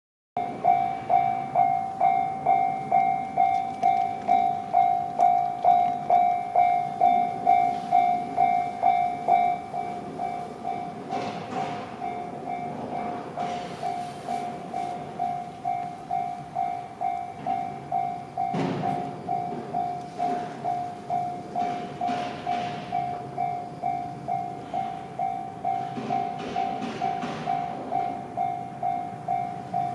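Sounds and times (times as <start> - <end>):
level crossing warning bell: 0.4 - 29.9.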